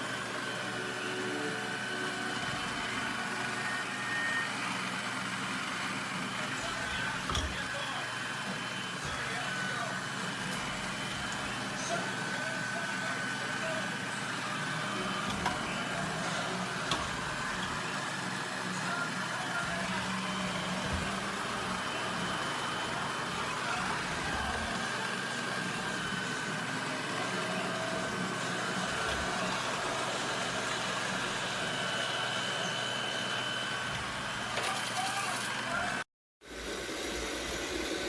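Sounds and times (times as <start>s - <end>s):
robot vacuum motor whine: 0.0s - 38.0s.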